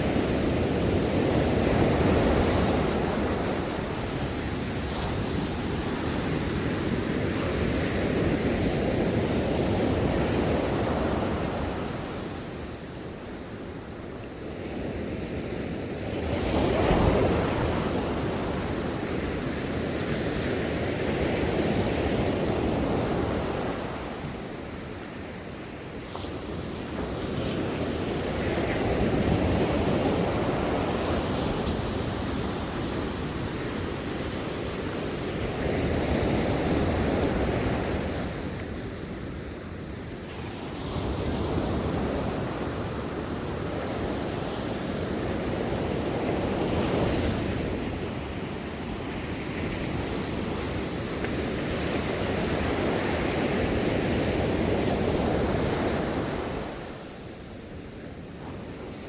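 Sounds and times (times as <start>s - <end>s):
ocean waves breaking on shore: 15.3s - 59.0s.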